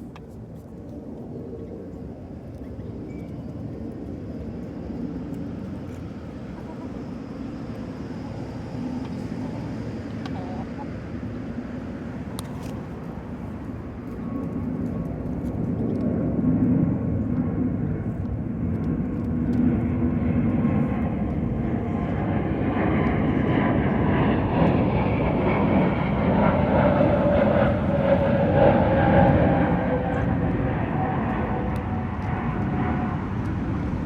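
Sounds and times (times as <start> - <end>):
engine drone: 18.2 - 34.0.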